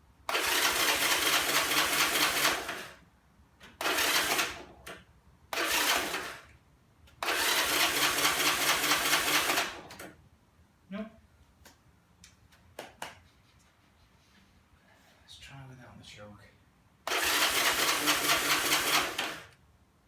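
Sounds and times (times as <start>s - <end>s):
motorcycle starter cranking engine: 0.3s - 3.0s, 3.6s - 6.5s, 7.2s - 10.1s, 17.1s - 19.6s.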